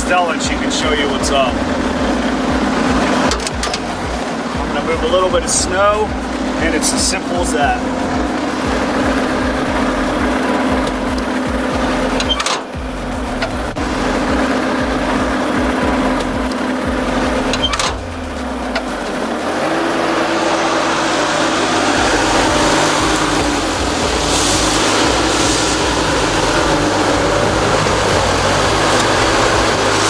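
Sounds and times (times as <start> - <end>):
sharp clicks: 0.0 - 19.8
diesel engine under load: 0.0 - 30.0.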